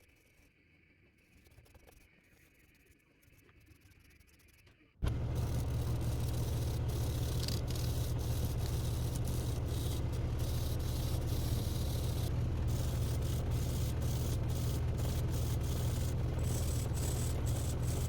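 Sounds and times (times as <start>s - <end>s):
electric power tool running: 5.0s - 18.0s.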